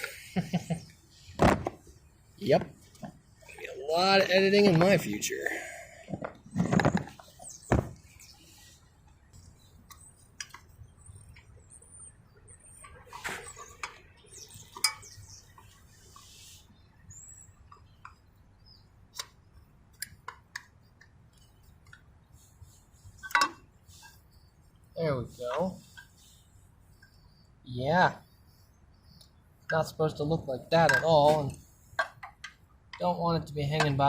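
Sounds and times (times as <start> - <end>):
metal tools clinking and tapping: 14.7 - 15.2, 23.2 - 23.6, 30.8 - 32.6.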